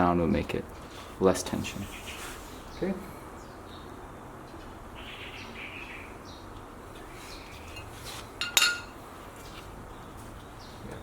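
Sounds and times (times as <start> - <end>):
metallic clink: 7.8 - 9.0.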